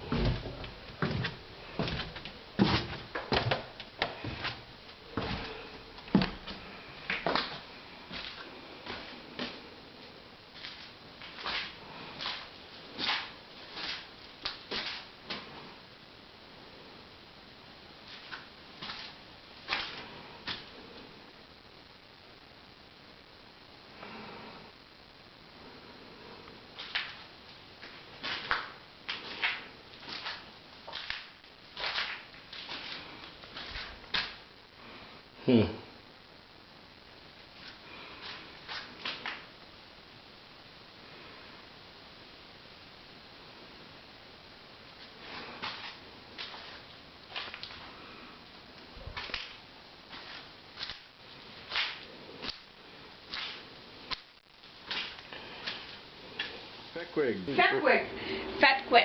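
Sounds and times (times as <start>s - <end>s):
scuffing footsteps: 0.0s - 9.6s.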